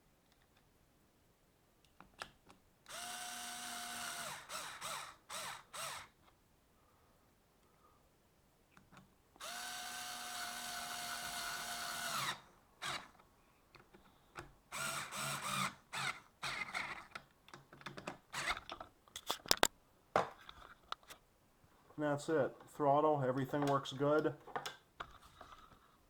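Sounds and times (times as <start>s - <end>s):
power drill whine: 2.9s - 6.2s, 9.4s - 13.1s, 14.7s - 17.1s.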